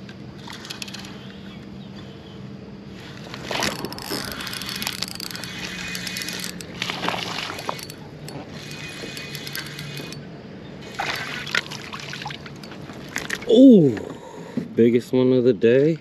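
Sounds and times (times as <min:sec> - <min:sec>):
water splashing and sloshing: 0:06.7 - 0:09.9, 0:10.8 - 0:13.6.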